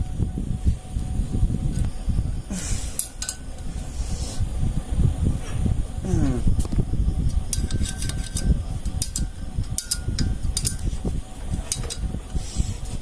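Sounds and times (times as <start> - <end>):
low steady rumble: 0.0 - 13.0
metallic clicks of hand tools: 7.5 - 10.8.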